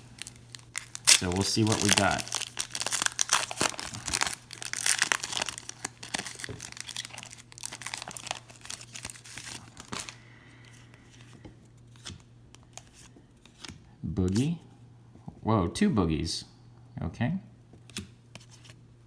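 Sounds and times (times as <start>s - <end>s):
wrapper tearing and crinkling: 0.0s - 10.2s.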